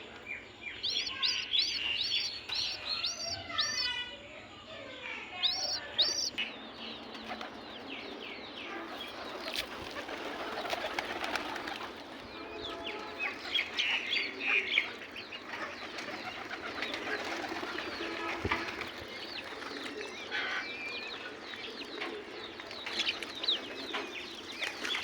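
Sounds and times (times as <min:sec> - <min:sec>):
birds chirping: 0:00.0 - 0:25.0
pigeons cooing: 0:13.4 - 0:24.4.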